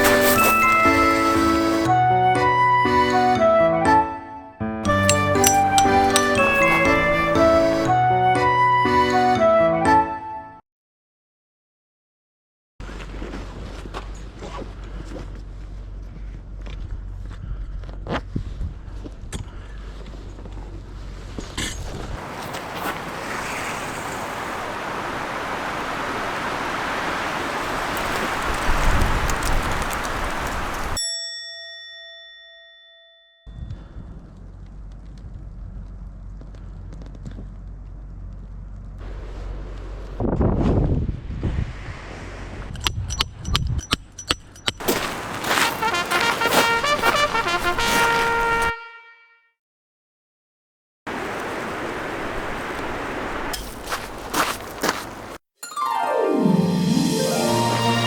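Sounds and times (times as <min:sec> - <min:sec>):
background music with brass notes: 0:00.1 - 0:10.6, 0:45.5 - 0:49.3, 0:56.3 - 0:58.0
strong wind blowing: 0:22.0 - 0:31.0, 0:40.2 - 0:43.9.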